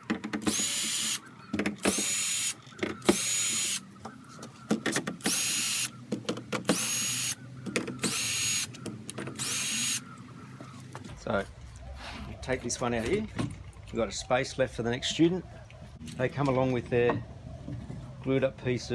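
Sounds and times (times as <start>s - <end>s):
handling clicks and knocks: 0.0s - 0.5s, 1.5s - 1.9s, 4.0s - 5.3s, 6.0s - 6.7s, 7.6s - 8.0s
cordless drill whirring: 0.4s - 1.2s, 1.8s - 3.8s, 5.2s - 5.9s, 6.7s - 7.4s, 8.0s - 8.7s, 9.4s - 10.0s.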